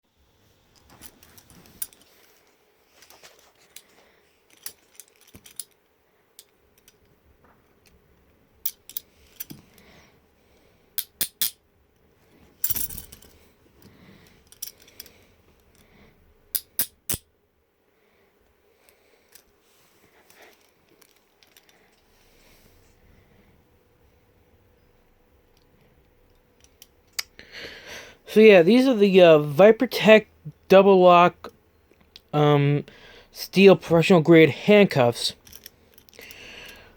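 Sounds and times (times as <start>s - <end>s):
handcuffs clinking and clicking: 0.8s - 2.1s, 3.1s - 7.1s, 8.6s - 9.9s, 11.0s - 11.6s, 12.6s - 15.9s, 16.5s - 17.3s, 20.3s - 21.8s, 35.3s - 36.9s.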